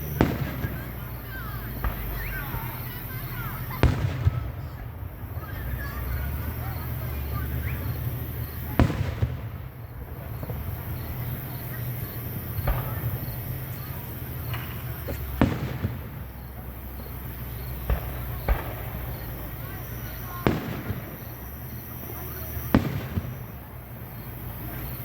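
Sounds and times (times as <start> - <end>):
fireworks bangs: 0.0 - 25.0.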